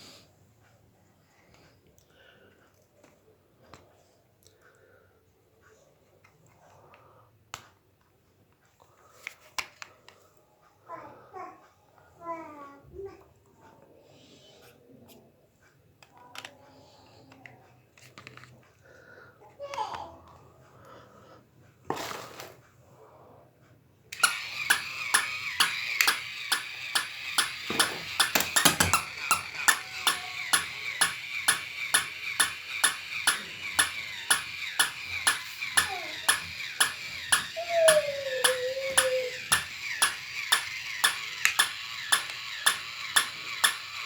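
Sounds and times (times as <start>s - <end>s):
toy mechanism clicking: 24.1s - 44.0s
toy motor whining: 24.2s - 44.0s.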